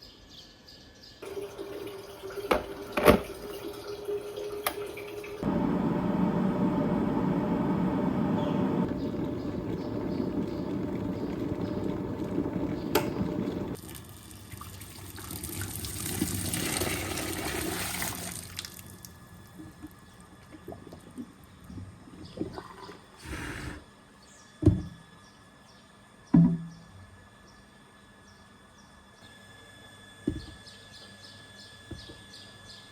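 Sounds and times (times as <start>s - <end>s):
tap water running into kettle: 1.2s - 5.6s, 6.6s - 23.0s.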